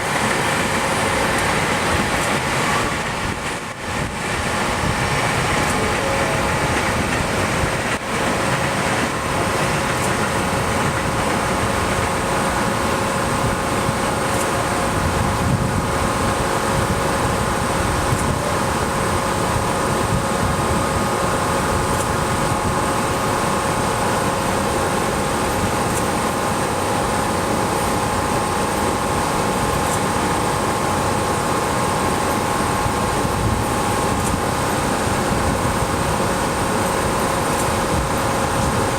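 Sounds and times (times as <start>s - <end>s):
electrical hum and whine: 0.0s - 38.9s
fan noise: 0.0s - 38.9s.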